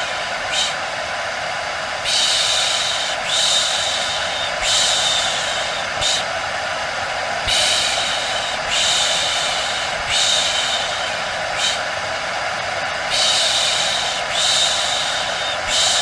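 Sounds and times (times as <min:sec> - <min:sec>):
hair dryer whirring: 0:00.0 - 0:16.0
hissing surges: 0:02.0 - 0:06.4, 0:07.4 - 0:11.9, 0:13.0 - 0:16.0.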